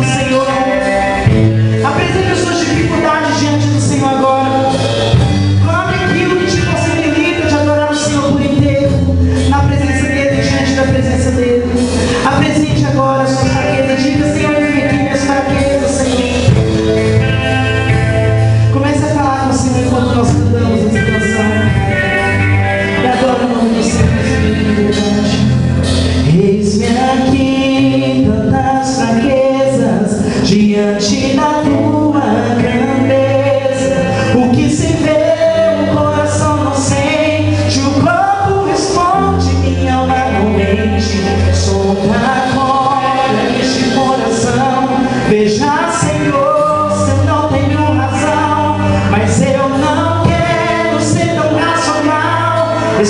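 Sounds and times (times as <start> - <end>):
bass: 0.0 - 53.0
people singing gospel: 23.0 - 53.0.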